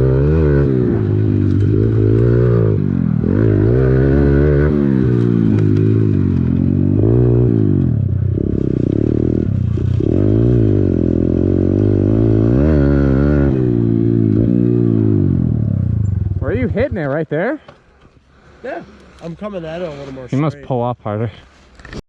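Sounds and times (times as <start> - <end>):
small motorbike engine revving: 0.0 - 16.4.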